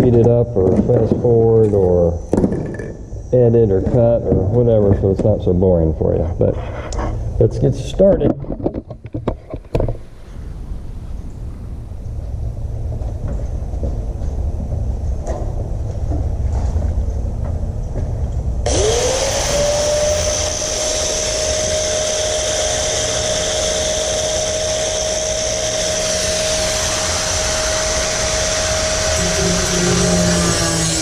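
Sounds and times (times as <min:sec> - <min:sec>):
grinder whining: 0:18.7 - 0:31.0.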